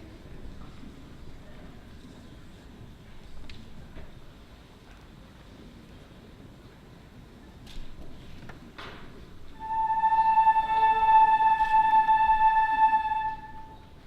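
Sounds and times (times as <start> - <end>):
long held musical note: 9.5 - 14.0.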